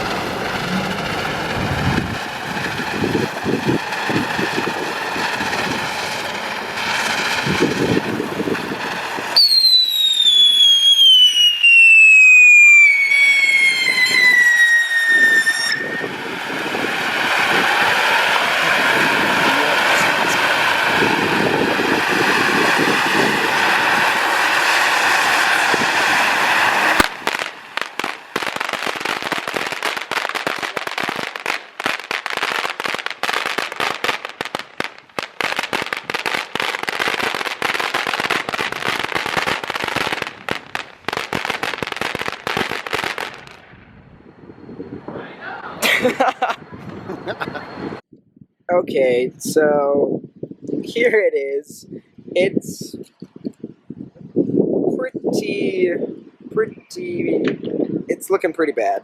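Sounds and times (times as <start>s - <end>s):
firework crackling pops: 0.0s - 43.7s
firework fountain hissing: 0.0s - 43.7s
falling firework whistle: 0.0s - 46.1s.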